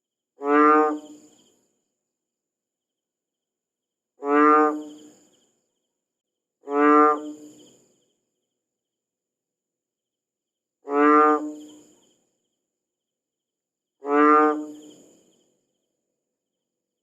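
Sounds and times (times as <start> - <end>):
frog croaking: 0.4 - 1.6, 4.2 - 5.5, 6.6 - 7.9, 10.8 - 12.2, 14.0 - 15.4.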